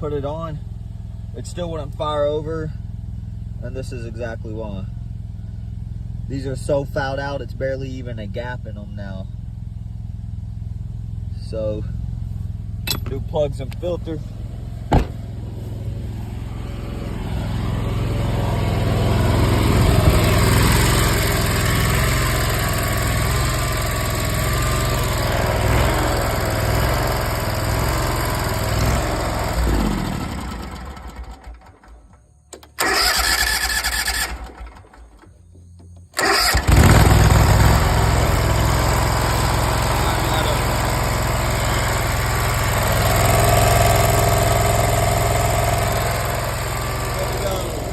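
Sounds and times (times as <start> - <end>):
mower engine running: 10.0 - 35.2, 36.1 - 47.9.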